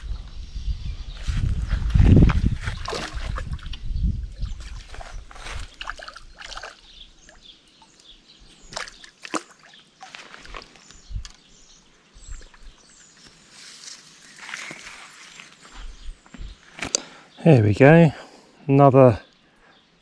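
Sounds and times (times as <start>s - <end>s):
water sloshing and splashing: 2.3s - 11.4s.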